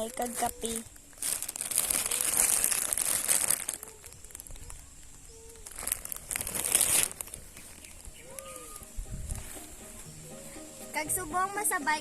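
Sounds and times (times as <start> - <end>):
bag crinkling: 0.0 - 8.6.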